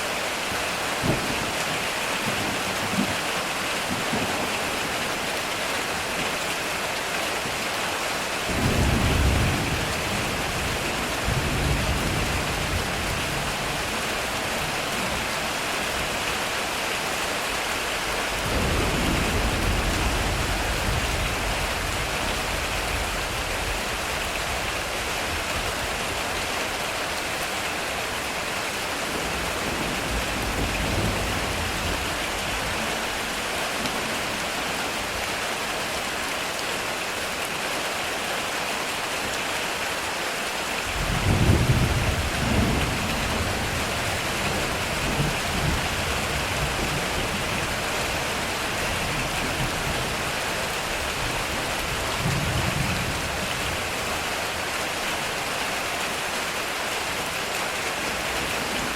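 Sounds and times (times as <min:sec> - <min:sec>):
heavy rain hissing: 0:00.0 - 0:58.9.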